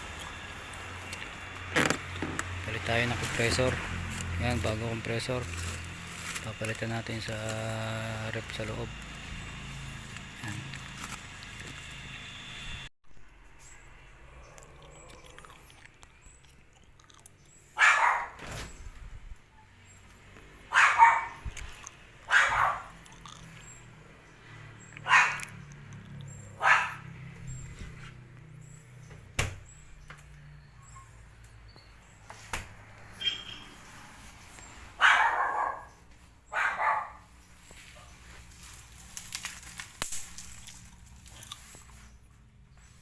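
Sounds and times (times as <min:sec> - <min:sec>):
dog barking: 0:17.8 - 0:18.4, 0:20.7 - 0:21.4, 0:22.3 - 0:23.0, 0:25.0 - 0:25.6, 0:26.6 - 0:27.2, 0:35.0 - 0:37.3.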